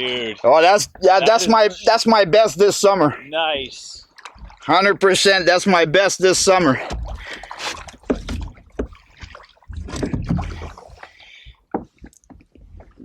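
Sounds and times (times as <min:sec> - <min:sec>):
water splashing and sloshing: 0:00.0 - 0:13.0
knocks against canoe hull: 0:06.8 - 0:09.1.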